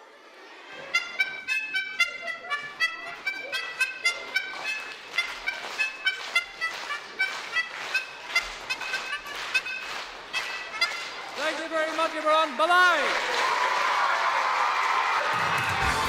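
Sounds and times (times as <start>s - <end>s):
homemade instrument tune: 0.8s - 11.2s.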